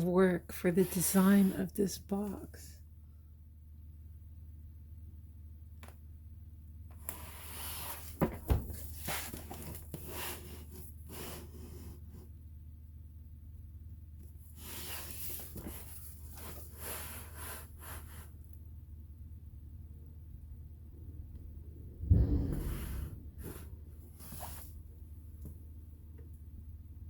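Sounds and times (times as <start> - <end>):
cardboard box rustling and scraping: 7.3 - 12.1.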